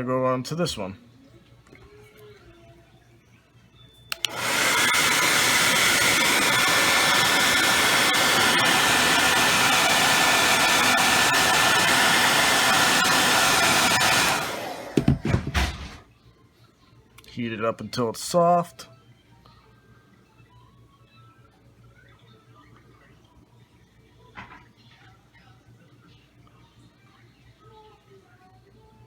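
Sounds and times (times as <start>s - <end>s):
hair dryer blowing: 4.1s - 16.0s.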